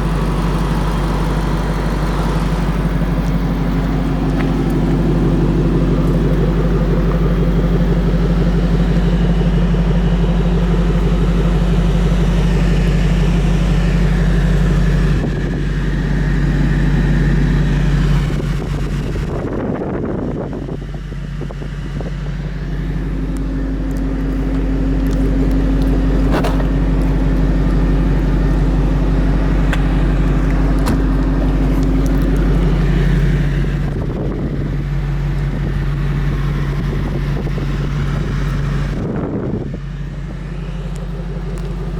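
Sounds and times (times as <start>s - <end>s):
car engine idling: 0.0s - 41.9s.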